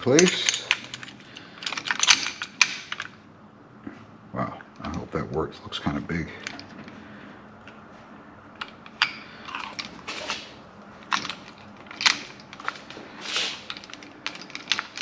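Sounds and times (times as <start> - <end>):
metal parts clicking and knocking: 0.0 - 3.2, 8.6 - 15.0.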